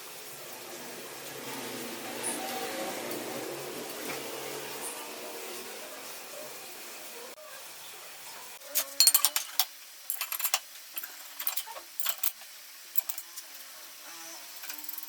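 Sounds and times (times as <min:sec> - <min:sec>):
metal parts clinking and rattling: 0:08.7 - 0:13.4, 0:14.6 - 0:15.0.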